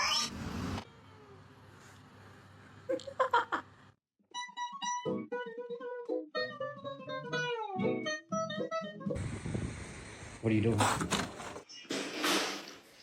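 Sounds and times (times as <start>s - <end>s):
plucked guitar music: 4.3s - 9.2s.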